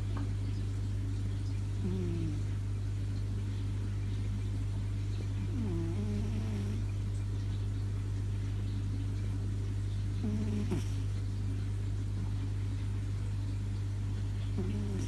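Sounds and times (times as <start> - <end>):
loud electrical hum: 0.0 - 15.0
cat snoring: 1.8 - 2.5, 5.5 - 6.8, 10.2 - 11.1, 14.6 - 15.0.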